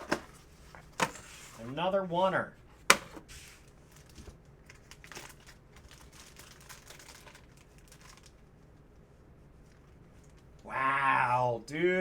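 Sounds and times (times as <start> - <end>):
packaging crinkling and rustling: 3.0 - 8.5.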